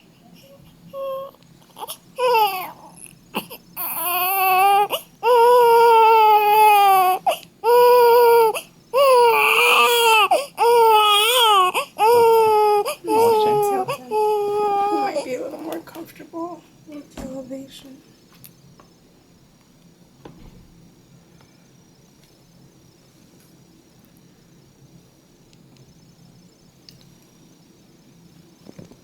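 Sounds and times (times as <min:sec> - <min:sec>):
baby crying: 0:00.4 - 0:15.4.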